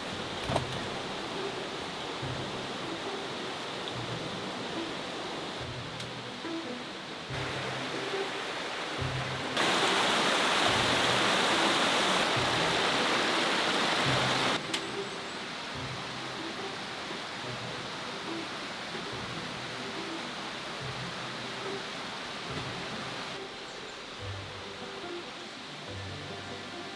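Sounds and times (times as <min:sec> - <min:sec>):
music with soft low beat: 0:00.1 - 0:09.6
loud rushing hiss: 0:07.0 - 0:18.4.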